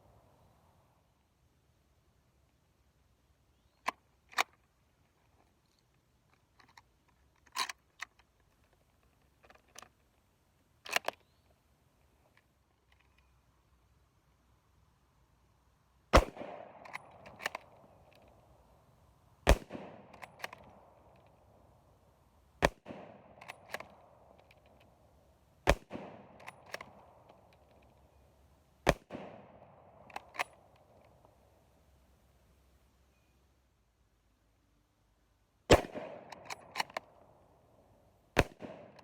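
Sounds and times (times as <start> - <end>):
rifle bolt metallic clicks: 3.7 - 10.1, 10.8 - 11.4, 16.2 - 18.5, 19.5 - 21.5, 22.6 - 25.0, 25.6 - 28.1, 28.9 - 31.4, 35.7 - 37.3, 38.4 - 39.0
rifle shots echoing: 16.1 - 17.8, 19.4 - 21.0, 22.6 - 24.3, 25.6 - 27.4, 28.9 - 30.6, 35.7 - 37.2, 38.4 - 39.0.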